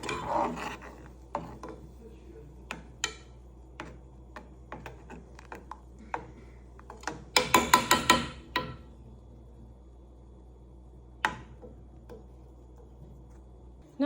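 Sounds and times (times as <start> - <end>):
spoon stirring clicks: 2.6 - 8.8.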